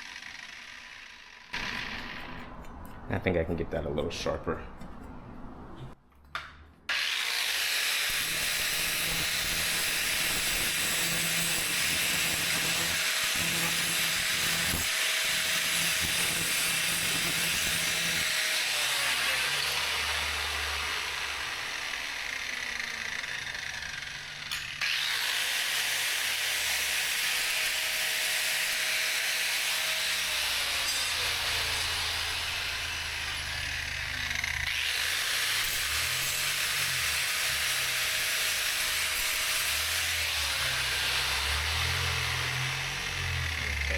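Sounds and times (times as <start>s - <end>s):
power grinder grinding metal: 0.0s - 2.8s, 6.9s - 43.9s.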